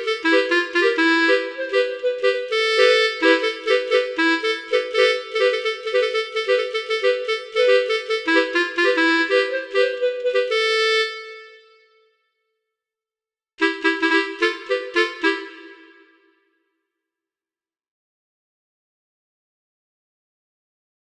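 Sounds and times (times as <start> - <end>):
multi-tone bus air horn tune: 0.0 - 12.0, 13.6 - 16.4.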